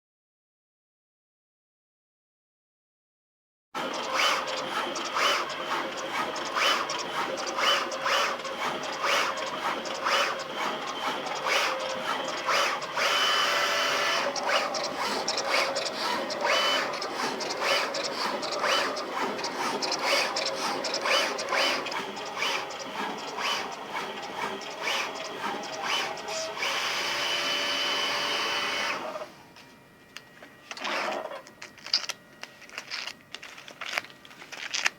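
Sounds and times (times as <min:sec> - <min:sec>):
cutting machine running: 0:03.8 - 0:34.9
sharp machine clicks: 0:03.9 - 0:29.0
high steady whine: 0:04.9 - 0:30.8.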